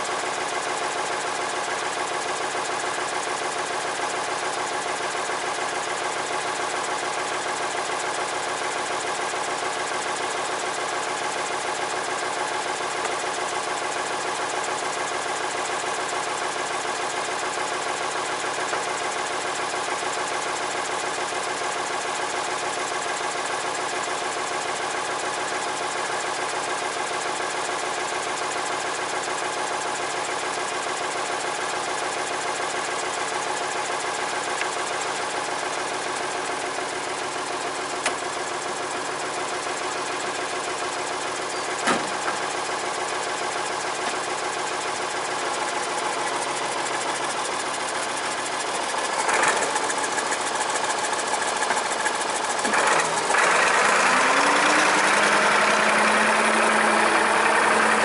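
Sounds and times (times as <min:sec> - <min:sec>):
engine running: 0:31.6 - 0:58.0.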